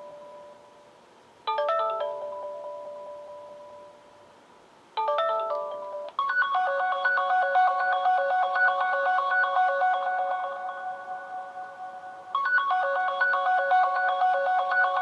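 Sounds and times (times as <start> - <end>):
bright electronic ringtone melody: 1.5 - 4.0, 5.0 - 15.0
phone ringtone ringing: 5.0 - 15.0.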